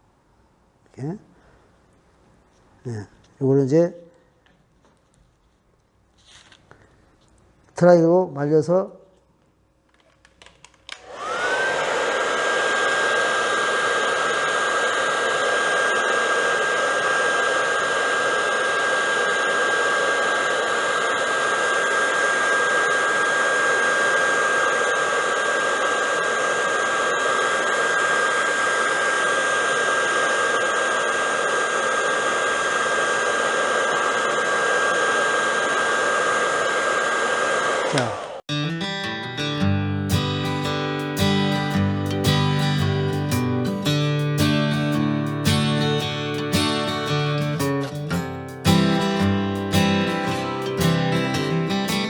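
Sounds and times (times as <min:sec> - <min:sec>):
hair dryer motor whining: 0:10.9 - 0:38.4.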